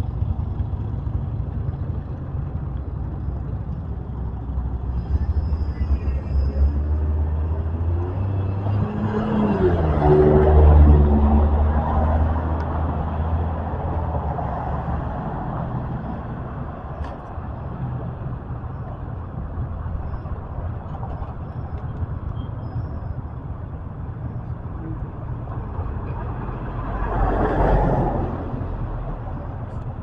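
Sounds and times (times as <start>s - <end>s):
low traffic rumble: 0.0s - 30.0s
vehicle passing: 5.1s - 16.7s, 25.2s - 30.0s.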